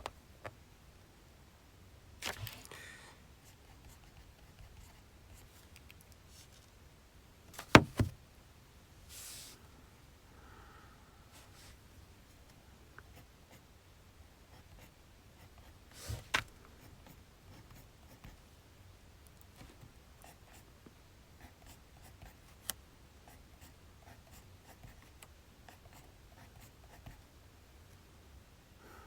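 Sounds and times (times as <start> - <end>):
loud knock: 7.7 - 8.2.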